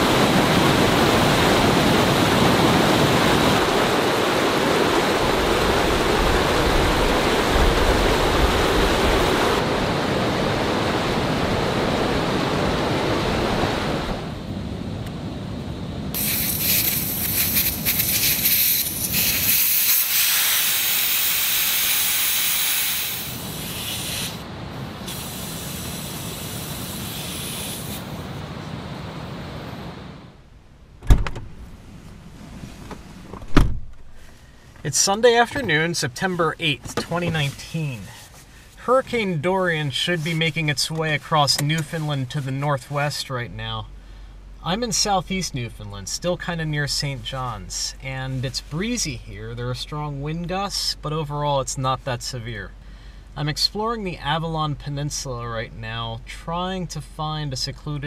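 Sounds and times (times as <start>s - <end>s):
strong wind rushing: 0.0s - 16.2s.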